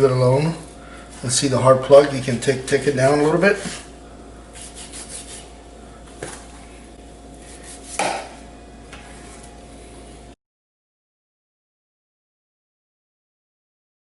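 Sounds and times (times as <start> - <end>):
steady low hum: 0.0 - 10.4
knife scraping on cutting board: 3.1 - 3.9, 4.5 - 5.6, 7.4 - 8.3.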